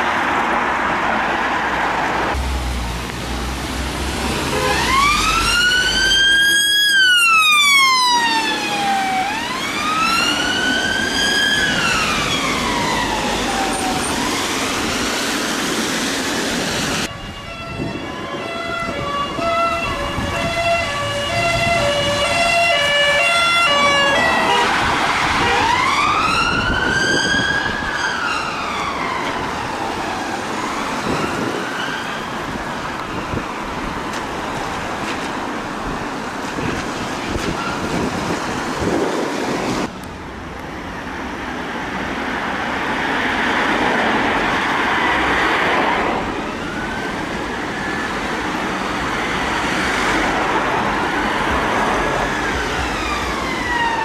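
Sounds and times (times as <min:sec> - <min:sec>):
tyre and engine noise: 0:00.0 - 0:54.0
faint siren wailing: 0:04.5 - 0:15.6, 0:16.9 - 0:33.7, 0:45.8 - 0:50.4, 0:51.1 - 0:54.0
two-note hi-lo siren: 0:17.1 - 0:24.7.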